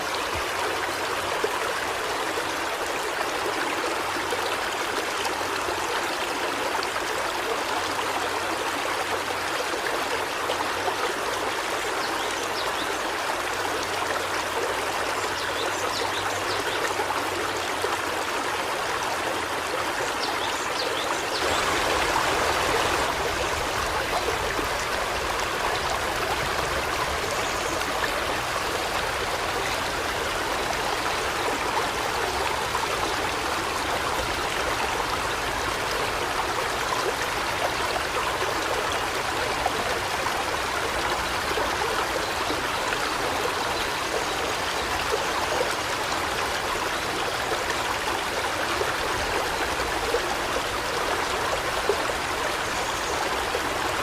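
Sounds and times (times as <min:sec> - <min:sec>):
river water rushing over rocks: 0:00.0 - 0:54.0.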